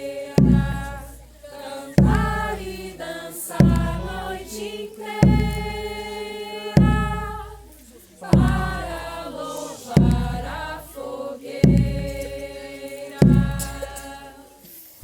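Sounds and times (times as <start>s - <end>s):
group singing a slow hymn: 0.0s - 15.0s
deep drum beat: 0.4s - 1.4s, 2.0s - 4.6s, 5.2s - 6.2s, 6.8s - 10.9s, 11.6s - 12.5s, 13.2s - 14.1s.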